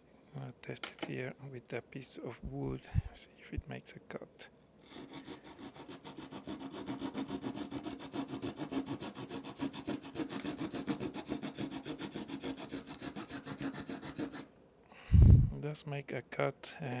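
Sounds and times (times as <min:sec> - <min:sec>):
small saw cutting wood: 0:04.8 - 0:14.5.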